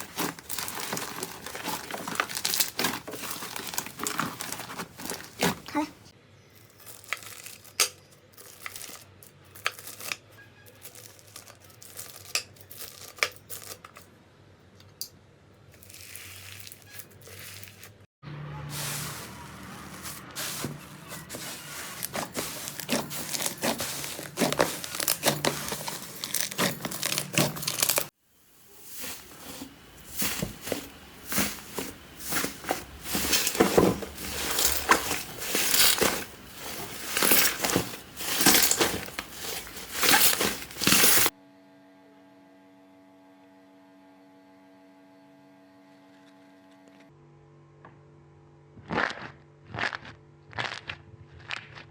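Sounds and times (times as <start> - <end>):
slime crackling and squishing: 0.0 - 5.9, 18.8 - 28.1.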